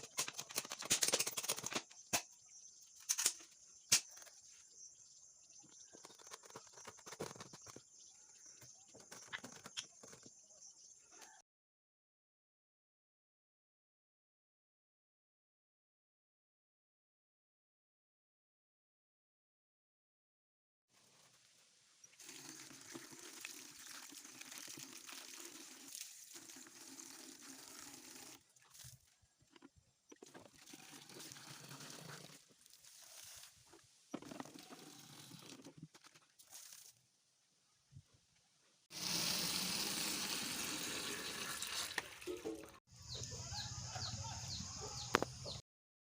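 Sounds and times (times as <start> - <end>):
water pouring into plastic bottle: 22.1 - 29.1, 30.2 - 37.0, 38.9 - 42.8.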